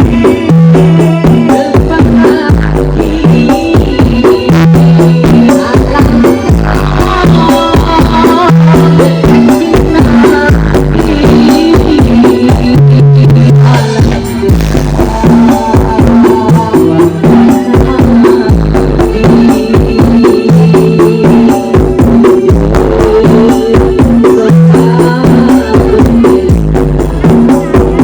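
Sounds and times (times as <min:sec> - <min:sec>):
deep heavy bass: 0:00.0 - 0:28.0
fast percussion beat: 0:00.0 - 0:28.0
loud music from sound system: 0:00.0 - 0:28.0.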